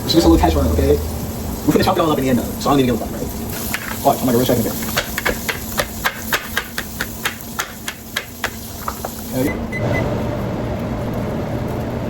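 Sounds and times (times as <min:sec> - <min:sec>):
steady low hum: 0:00.0 - 0:03.9.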